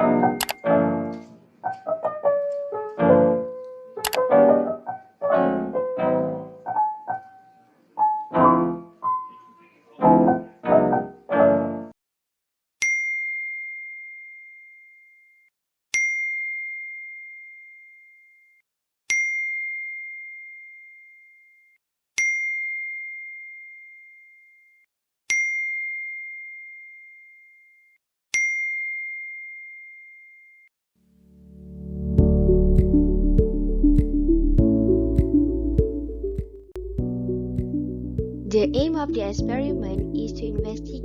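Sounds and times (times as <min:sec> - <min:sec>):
high bell-like ding: 0:12.8 - 0:15.4.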